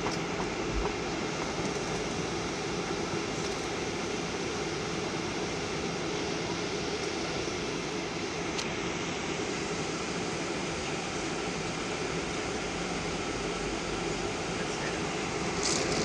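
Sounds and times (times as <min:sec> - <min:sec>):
jet engine and airflow noise: 0:00.0 - 0:16.0.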